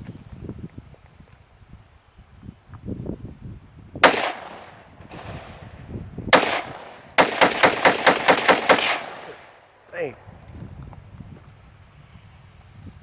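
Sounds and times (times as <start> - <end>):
gunshots: 4.0 - 5.6, 6.3 - 9.7.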